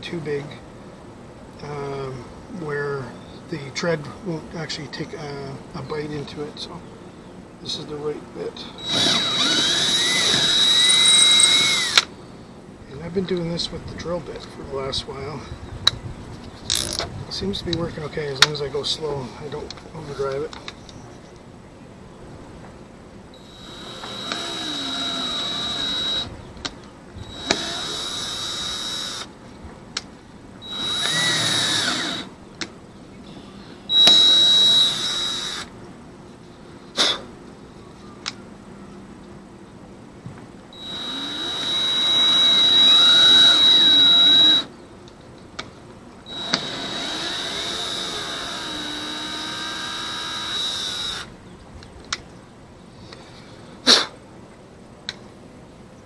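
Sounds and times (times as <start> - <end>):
power drill whirring: 8.8 - 12.1, 23.4 - 26.3, 27.3 - 29.3, 30.6 - 32.3, 33.9 - 35.7, 40.8 - 44.7, 46.3 - 51.3.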